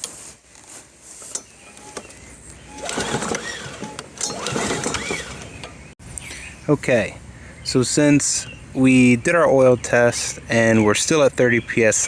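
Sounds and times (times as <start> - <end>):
mower engine cranked by recoil starter: 1.2 - 6.0.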